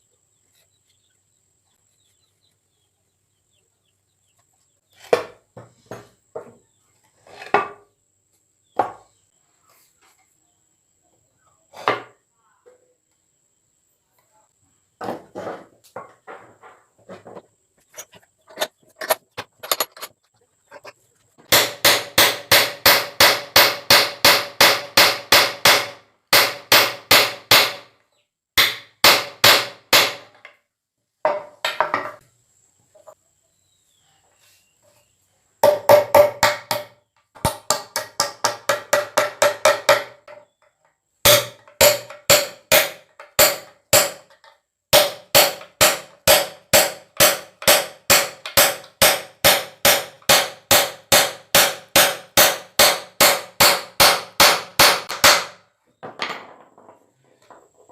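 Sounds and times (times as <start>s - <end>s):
hammer striking nails into wood: 21.5s - 27.9s, 28.6s - 30.6s, 35.6s - 40.5s, 41.3s - 55.6s.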